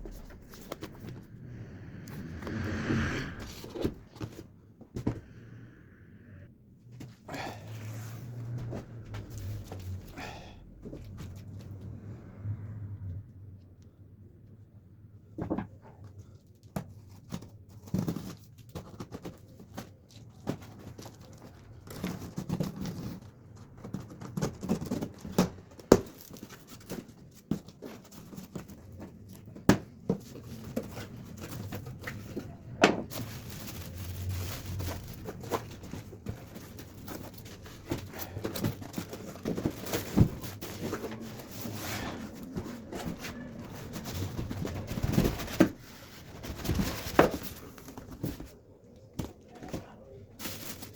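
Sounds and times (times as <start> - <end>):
packaging rustling: 30.2 - 48.6, 50.3 - 50.9.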